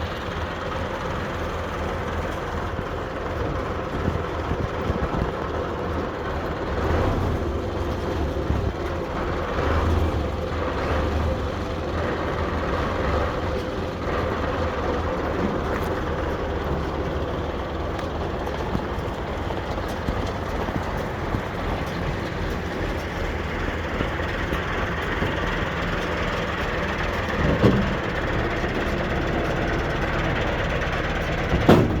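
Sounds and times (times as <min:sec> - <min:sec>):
tractor and baler running: 0:00.0 - 0:32.0
short mechanical knock: 0:31.5 - 0:32.0.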